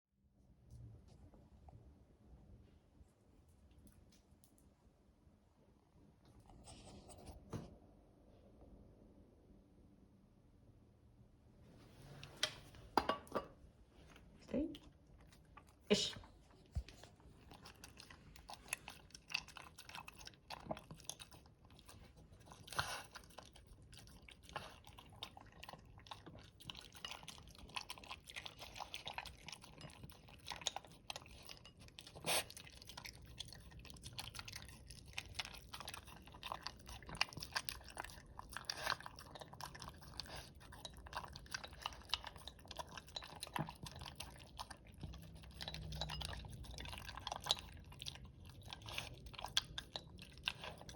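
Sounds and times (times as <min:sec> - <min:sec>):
dog chewing and crunching food: 0:14.0 - 0:50.9.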